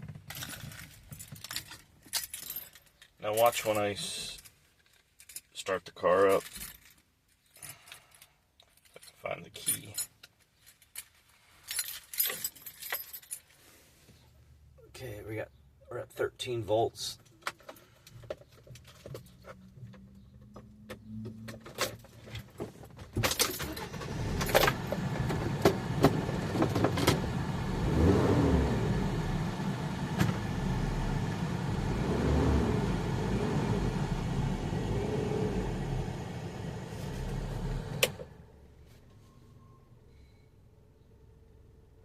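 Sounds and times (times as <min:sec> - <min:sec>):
keys jangling at ignition: 0:00.3 - 0:05.6, 0:06.2 - 0:13.6
car engine starting and running: 0:23.2 - 0:38.6.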